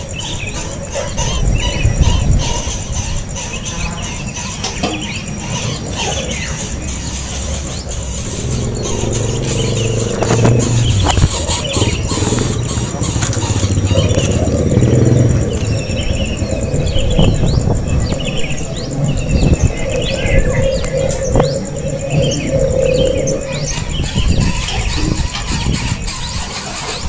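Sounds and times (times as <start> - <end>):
small birds chirping: 0.0 - 27.0
steady low rumble: 5.0 - 25.7.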